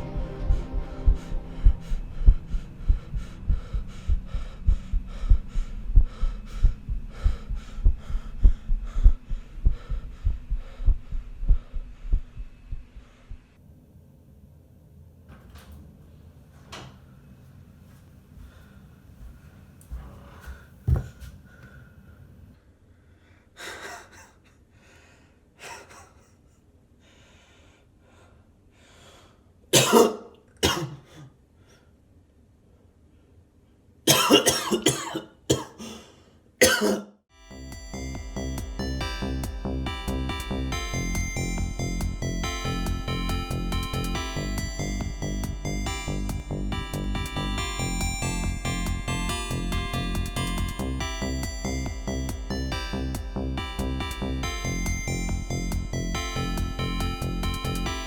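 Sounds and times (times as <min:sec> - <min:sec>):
heartbeat thumping: 0:00.0 - 0:13.5, 0:37.5 - 0:58.0
low hum: 0:00.0 - 0:18.8, 0:37.4 - 0:58.0
breathing: 0:01.2 - 0:12.4, 0:13.0 - 0:13.6, 0:18.4 - 0:29.5, 0:31.0 - 0:32.0, 0:35.8 - 0:36.4
person coughing: 0:29.8 - 0:31.3, 0:34.1 - 0:37.2.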